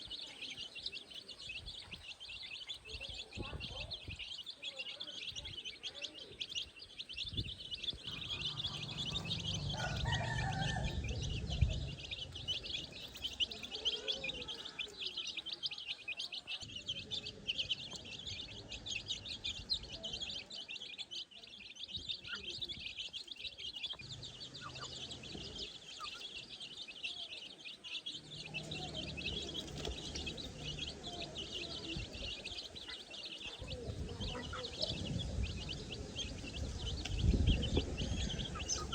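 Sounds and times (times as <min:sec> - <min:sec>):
baby chicks peeping: 0:00.0 - 0:38.9
low rumble: 0:07.4 - 0:13.3.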